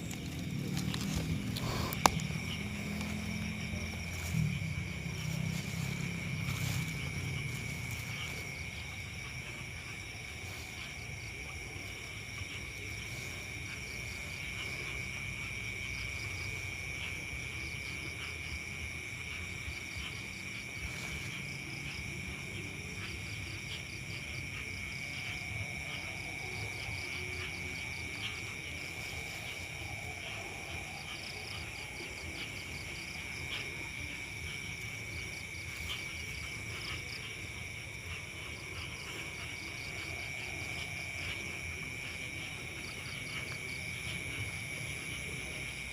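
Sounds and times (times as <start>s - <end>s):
low rumble: 0.0s - 11.8s
insects trilling: 0.0s - 45.9s
rapid pulsing insect chirps: 0.0s - 45.9s.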